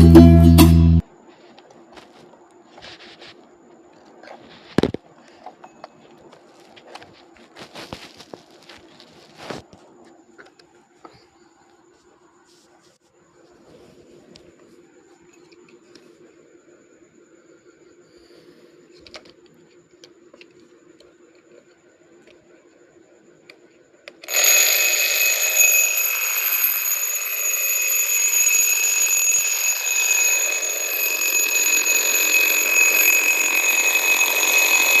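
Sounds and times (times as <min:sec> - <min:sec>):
alarm clock ringing: 0:24.2 - 0:35.0.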